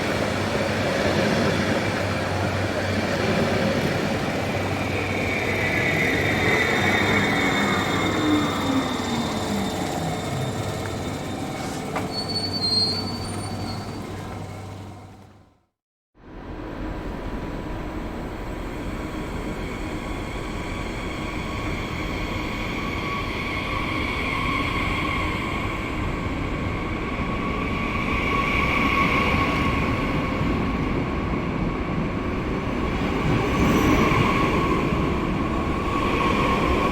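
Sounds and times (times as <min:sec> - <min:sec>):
train running on rails: 0:00.0 - 0:36.9
high wheel squeal: 0:03.8 - 0:15.3.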